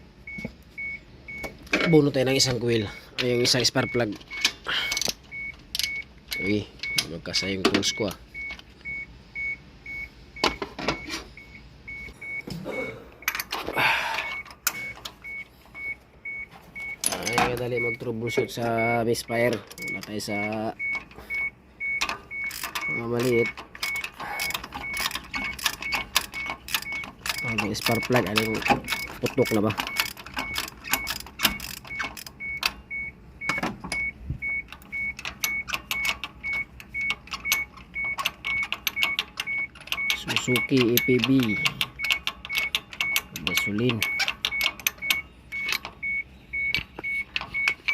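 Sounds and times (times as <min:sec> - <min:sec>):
hand tools clicking on metal: 0:03.2 - 0:07.9, 0:17.0 - 0:21.3, 0:21.9 - 0:32.8, 0:33.9 - 0:47.9
high electronic beep: 0:14.2 - 0:47.9.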